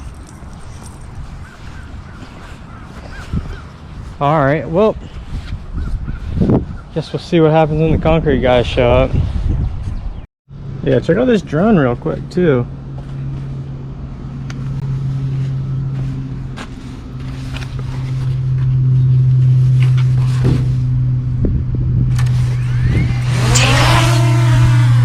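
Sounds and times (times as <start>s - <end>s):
drone propellers humming: 12.6s - 25.0s.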